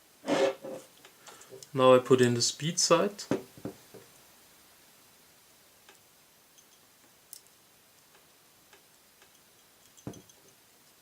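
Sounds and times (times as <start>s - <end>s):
small metal parts clicking: 9.2s - 11.0s.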